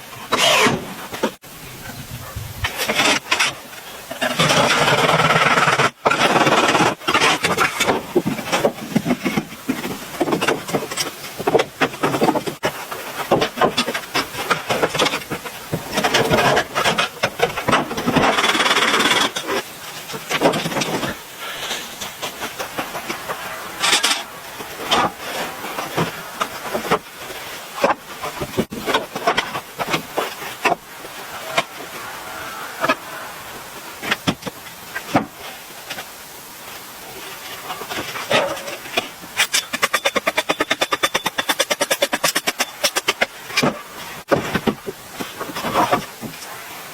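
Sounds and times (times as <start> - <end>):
wood scraping strokes: 0.0 - 46.9.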